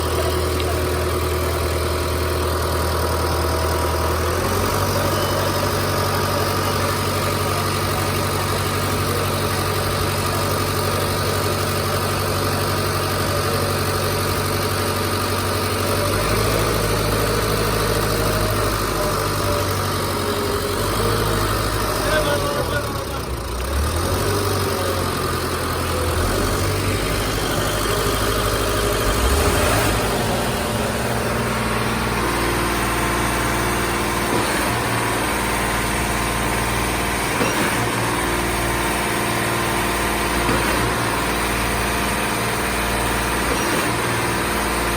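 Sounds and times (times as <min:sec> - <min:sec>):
concrete mixer engine running: 0:00.0 - 0:44.9.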